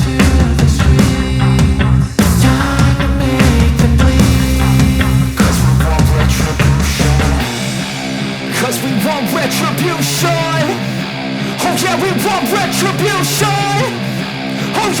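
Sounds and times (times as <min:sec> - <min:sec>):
rock music with singing: 0:00.0 - 0:15.0.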